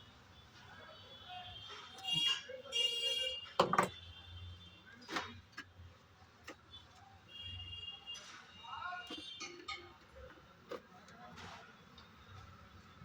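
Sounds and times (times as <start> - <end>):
clicks and knocks on iron parts: 3.6 - 4.0.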